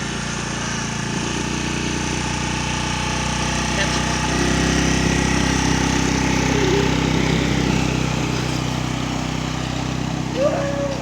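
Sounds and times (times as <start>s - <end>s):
scooter engine running: 0.0s - 11.0s.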